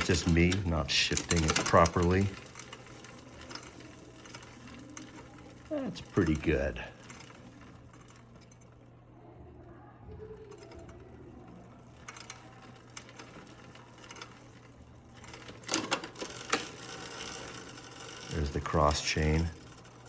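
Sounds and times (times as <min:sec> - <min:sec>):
gear shifting clicks: 0:00.0 - 0:08.8
bicycle chain running: 0:00.0 - 0:20.0.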